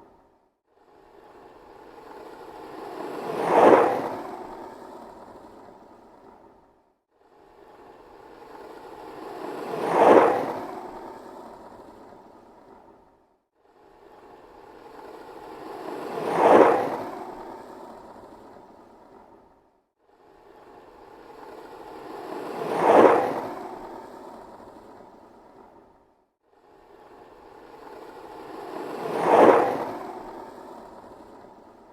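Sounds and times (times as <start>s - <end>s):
skateboard wheels rolling on pavement: 2.9s - 4.4s, 9.3s - 10.8s, 15.6s - 17.2s, 22.1s - 23.8s, 28.5s - 30.6s.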